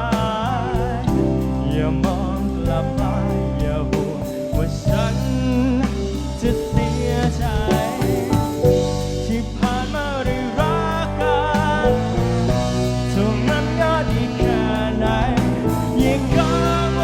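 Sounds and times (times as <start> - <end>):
band playing pop ballad: 0.0 - 17.0
bass: 0.0 - 17.0
drum kit: 0.0 - 17.0.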